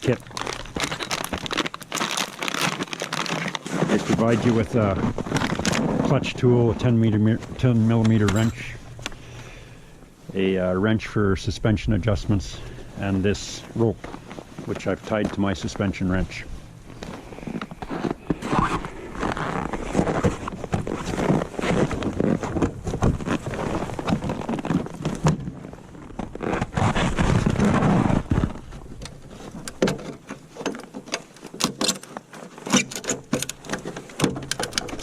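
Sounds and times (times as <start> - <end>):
rustling and clattering: 0.0 - 9.2, 13.5 - 35.0.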